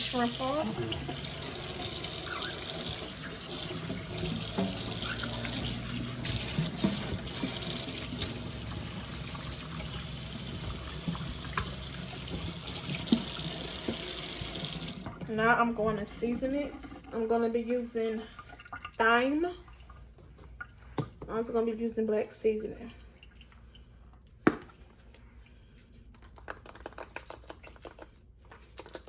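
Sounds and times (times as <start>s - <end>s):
tap running into a sink: 0.6s - 15.2s.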